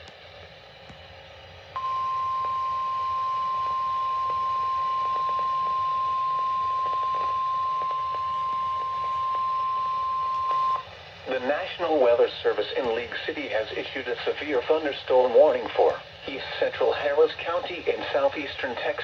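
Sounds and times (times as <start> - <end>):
faint radio hiss: 0.0 - 19.0
steady warning alarm tone: 1.8 - 10.9.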